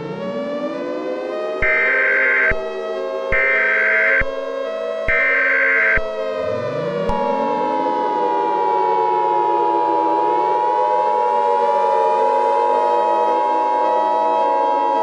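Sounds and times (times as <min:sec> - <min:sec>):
civil defense siren wailing: 0:00.0 - 0:15.0
emergency alert tone: 0:00.2 - 0:10.6.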